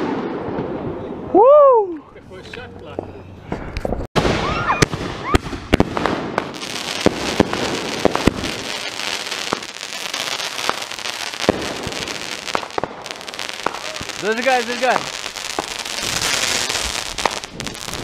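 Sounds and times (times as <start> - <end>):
firework pops and bangs: 3.8 - 18.0
fireworks crackling: 4.1 - 18.0.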